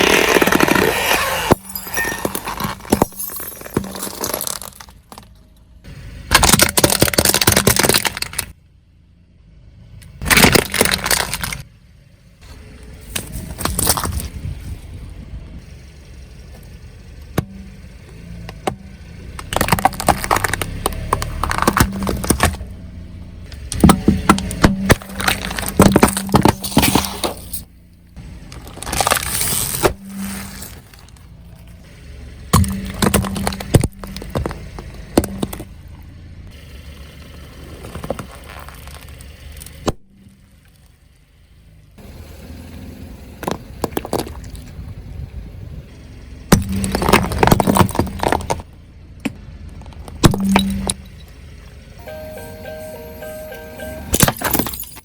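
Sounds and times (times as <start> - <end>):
tyres crushing brittle objects: 0.0 - 5.4, 6.3 - 8.6, 10.2 - 11.7, 19.3 - 22.6, 23.5 - 27.6, 28.5 - 31.3, 32.5 - 35.7, 46.5 - 48.6
car engine running: 0.0 - 55.0.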